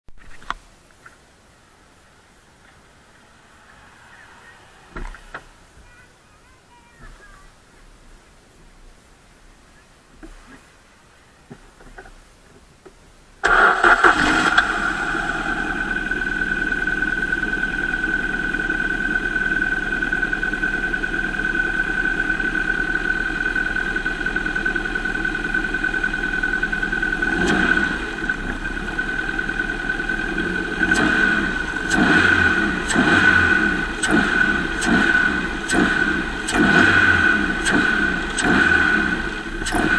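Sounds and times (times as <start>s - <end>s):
high steady whine: 0.2s - 6.3s, 12.8s - 39.9s
car engine starting and idling: 2.0s - 6.1s, 13.4s - 39.9s.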